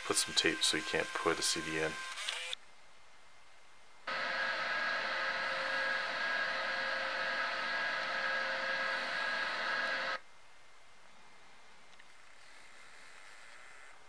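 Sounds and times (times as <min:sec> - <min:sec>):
small electric motor whirring: 0:00.0 - 0:02.6, 0:04.1 - 0:10.2.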